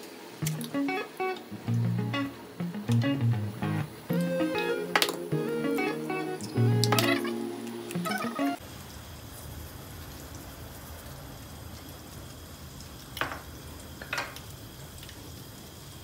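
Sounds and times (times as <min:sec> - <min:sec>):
oil sizzling in frying pan: 0:08.6 - 0:16.0.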